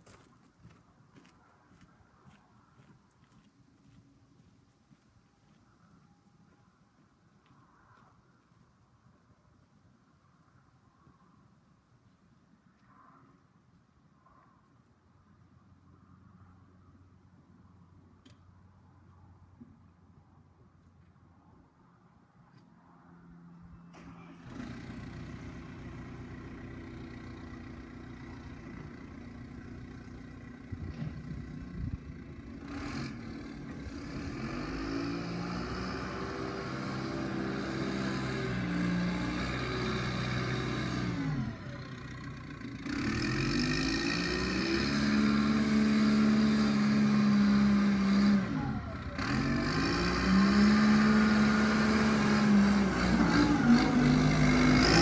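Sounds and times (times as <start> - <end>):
backhoe diesel engine revving: 23.9 - 55.0.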